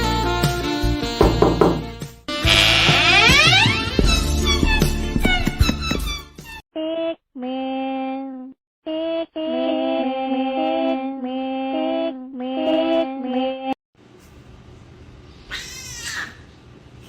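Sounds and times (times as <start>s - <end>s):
synthetic electronic tune: 2.4s - 4.2s.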